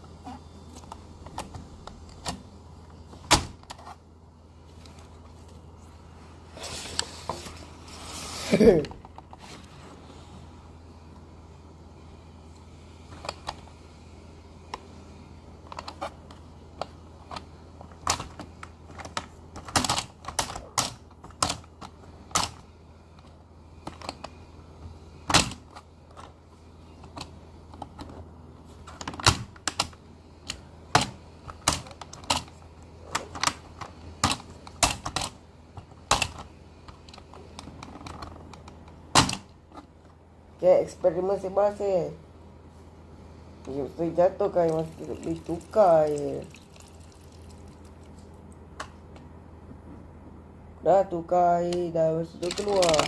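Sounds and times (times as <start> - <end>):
plastic toy clicks and clacks: 52.4 - 53.0.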